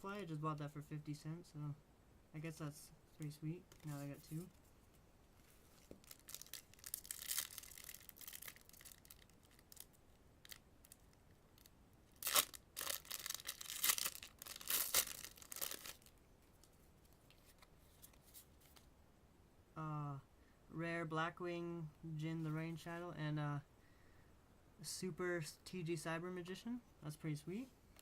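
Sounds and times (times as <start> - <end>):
foil wrapper tearing and crinkling: 6.0 - 16.1.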